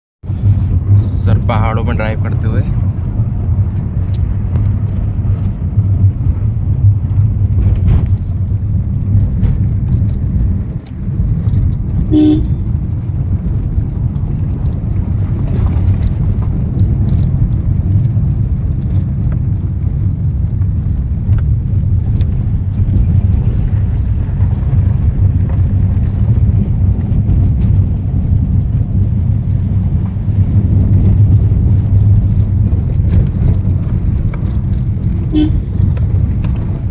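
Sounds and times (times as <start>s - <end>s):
vehicle engine and road rumble: 0.2s - 36.9s
light rattling clicks: 6.9s - 24.2s, 25.2s - 36.9s
short horn toot: 12.1s - 12.7s, 35.2s - 35.8s.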